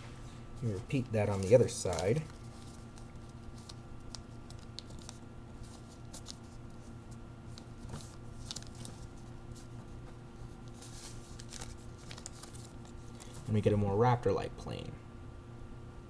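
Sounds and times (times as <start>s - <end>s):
low electrical hum: 0.0s - 16.0s
paper rustling and crackling: 0.6s - 13.5s.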